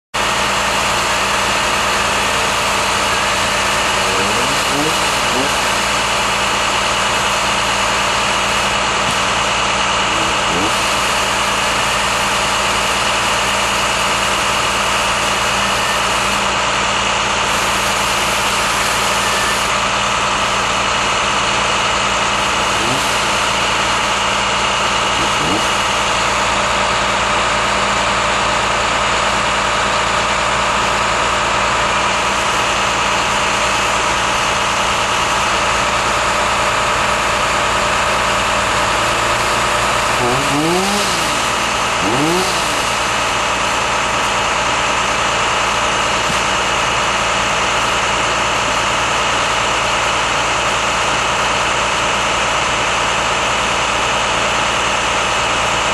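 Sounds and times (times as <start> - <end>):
motor engine running: 0.2 - 55.9.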